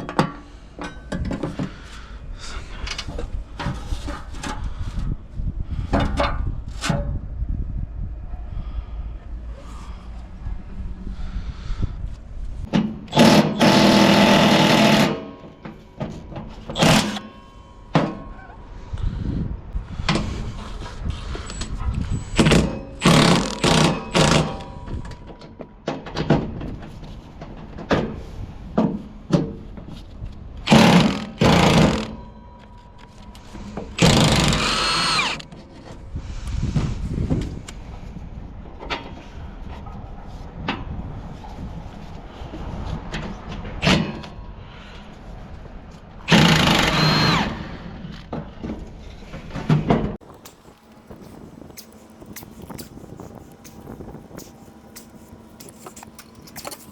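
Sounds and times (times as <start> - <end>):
power tool running: 13.1 - 15.3, 23.0 - 24.6, 30.7 - 32.2, 34.0 - 35.4, 46.3 - 47.8.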